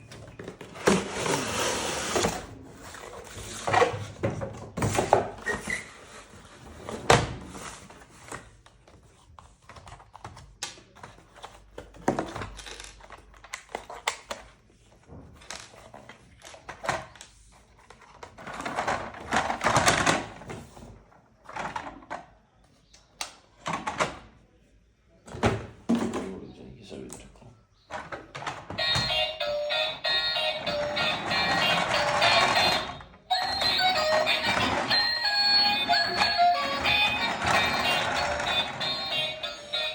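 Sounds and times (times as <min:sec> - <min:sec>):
plastic toy train clattering: 0:28.0 - 0:39.9.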